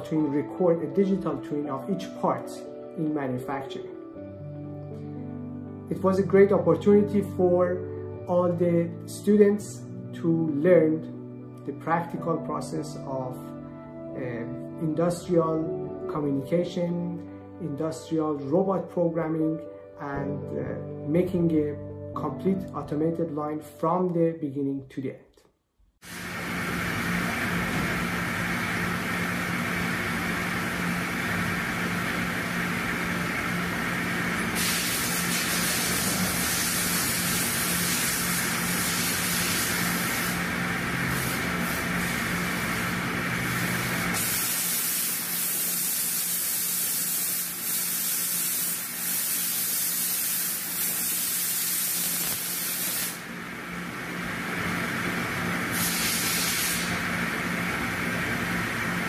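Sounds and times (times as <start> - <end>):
machine hum: 26.0 - 44.2, 53.2 - 55.8, 56.8 - 59.0
loud steady hiss: 26.0 - 59.0.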